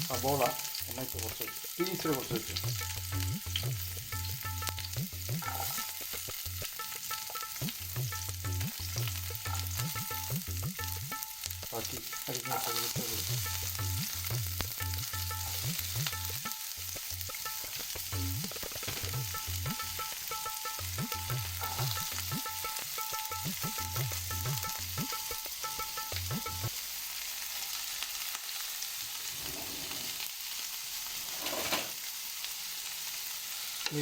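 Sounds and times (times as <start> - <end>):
onion sizzling in hot oil: 0.0 - 34.0
stirring in a pan: 29.2 - 30.3, 31.0 - 32.1.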